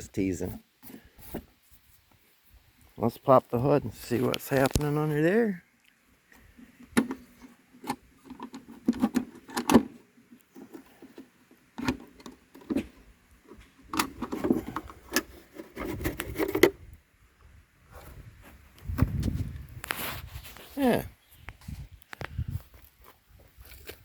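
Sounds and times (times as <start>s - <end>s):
metal cover being handled: 6.8s - 16.8s.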